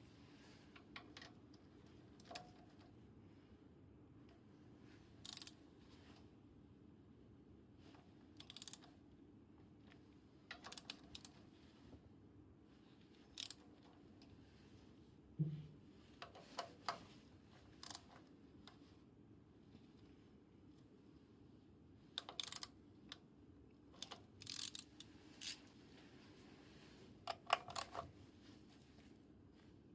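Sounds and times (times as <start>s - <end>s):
dull knock: 15.4s - 15.8s.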